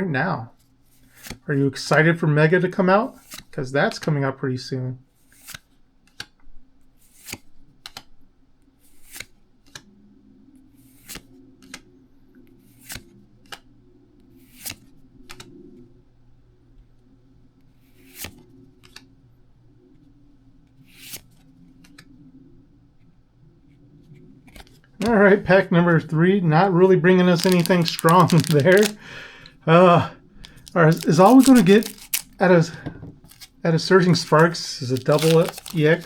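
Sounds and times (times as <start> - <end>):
cards sliding with papery snap: 27.3 - 29.0, 30.5 - 32.4, 33.2 - 36.0.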